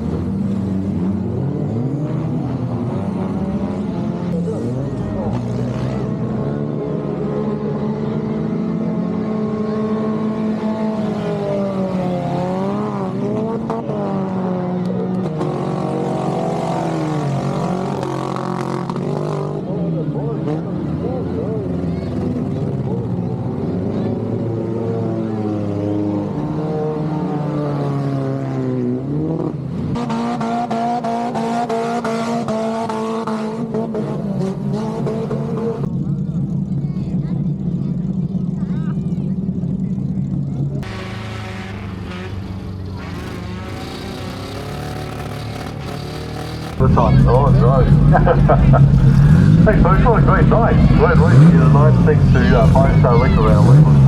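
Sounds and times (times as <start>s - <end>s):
race car engines revving: 0.0s - 54.0s
race car engine running: 30.0s - 54.0s.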